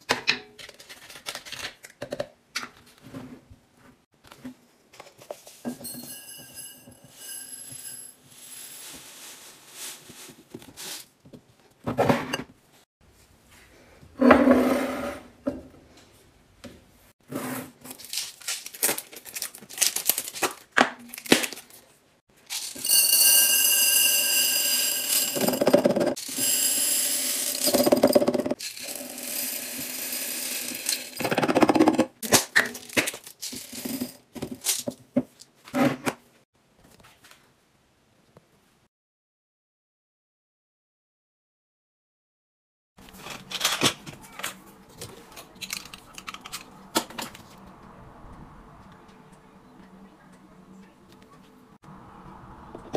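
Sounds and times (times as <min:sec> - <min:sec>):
packaging rustling: 0:17.9 - 0:21.8
clicks and knocks of containers: 0:43.0 - 0:47.4.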